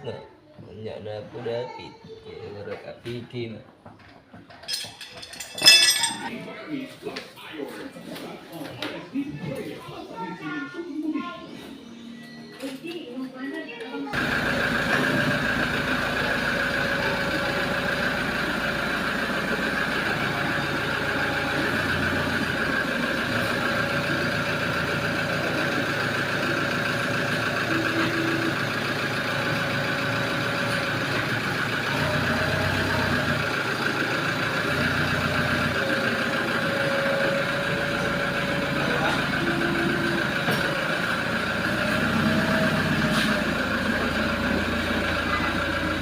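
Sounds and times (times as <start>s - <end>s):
van engine running: 14.2s - 46.0s.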